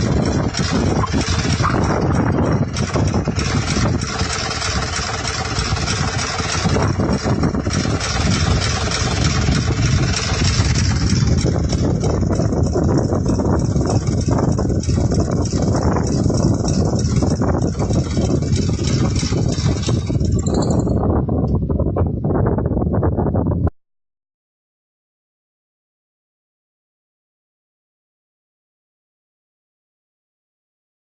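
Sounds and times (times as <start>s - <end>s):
vehicle engine rumbling: 0.0s - 23.7s.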